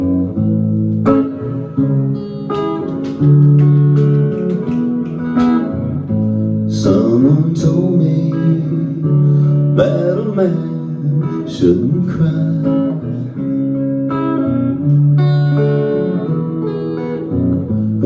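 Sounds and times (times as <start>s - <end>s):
guitar picked notes and chords: 0.0s - 18.0s.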